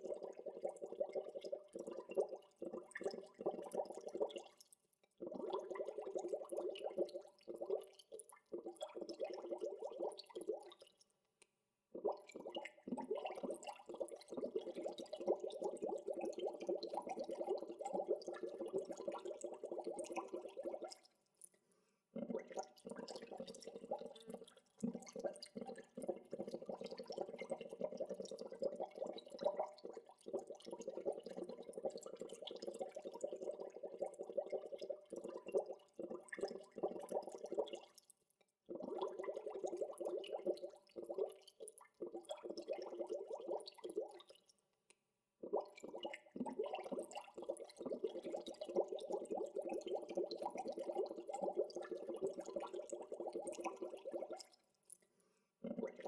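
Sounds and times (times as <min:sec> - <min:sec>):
water bubbling and gurgling: 0:00.0 - 0:04.6, 0:05.2 - 0:10.8, 0:12.0 - 0:21.0, 0:22.2 - 0:37.9, 0:38.7 - 0:44.4, 0:45.4 - 0:54.6, 0:55.6 - 0:56.0.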